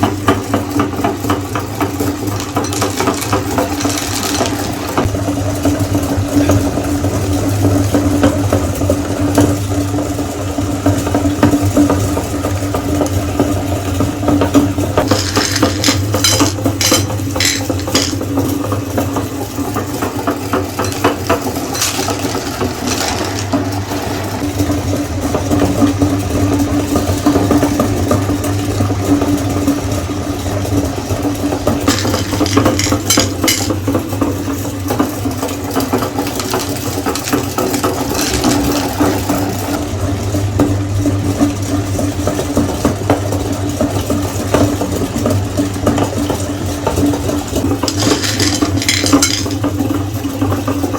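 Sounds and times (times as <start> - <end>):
meat grinder motor hum: 0.0 - 50.6
candy shells crunching: 2.1 - 5.1, 15.0 - 18.2, 20.6 - 23.7, 31.8 - 33.8, 36.2 - 39.0, 47.8 - 49.6.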